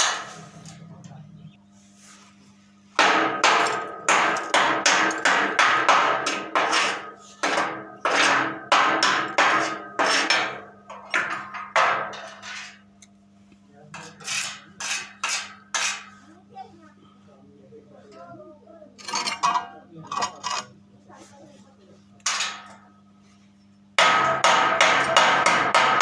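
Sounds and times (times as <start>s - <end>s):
hammer striking steel: 0.0s - 0.5s, 3.0s - 12.5s, 24.0s - 26.0s.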